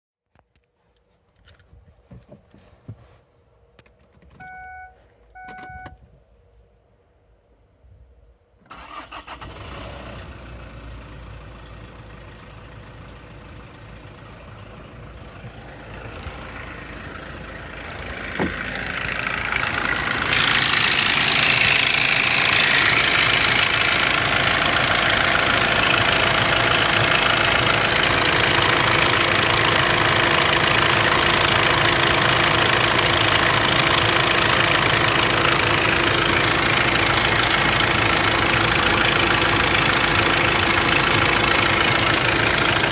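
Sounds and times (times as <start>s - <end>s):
diesel engine idling with rattle: 8.7s - 42.9s.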